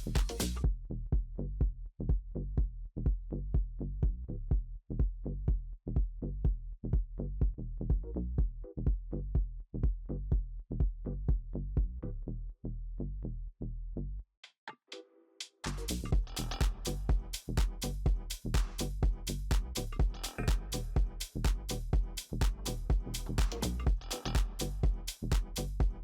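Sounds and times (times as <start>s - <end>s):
electronic music with heavy bass: 0.0s - 0.6s, 15.7s - 26.0s.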